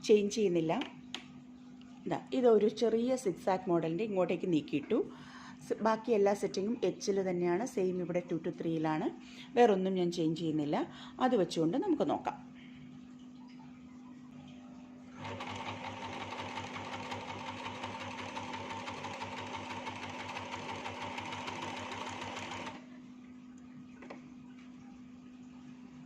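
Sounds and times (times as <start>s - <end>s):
electric sewing machine stitching: 15.2s - 22.8s.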